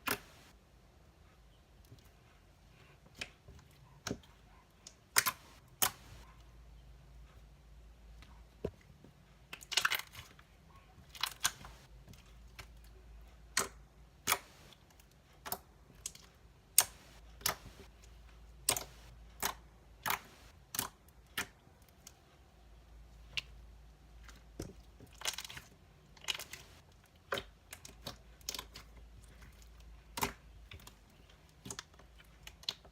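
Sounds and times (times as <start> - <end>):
slime clicking and popping: 18.6 - 21.6.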